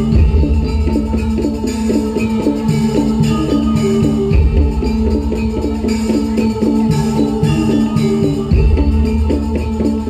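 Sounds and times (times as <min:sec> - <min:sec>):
drums: 0:00.0 - 0:10.0
gamelan music: 0:00.0 - 0:10.0
metal pitched percussion: 0:00.0 - 0:10.0.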